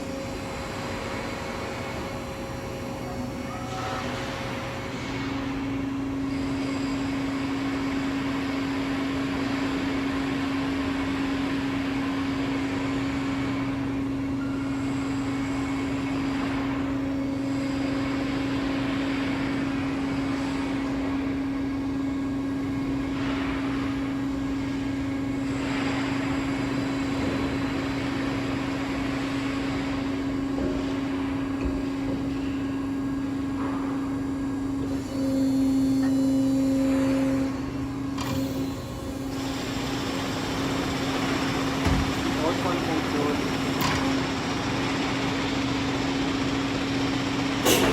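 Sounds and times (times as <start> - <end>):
lathe humming: 34.1 - 47.9.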